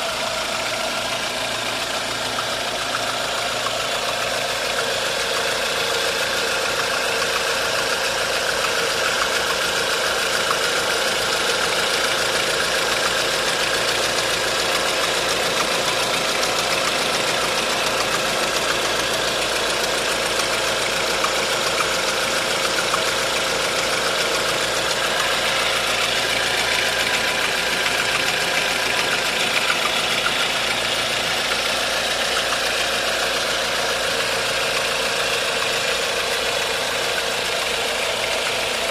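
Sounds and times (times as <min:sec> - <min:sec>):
abnormal mechanical engine noise: 0:00.0 - 0:38.9
car engine idling: 0:00.0 - 0:38.9.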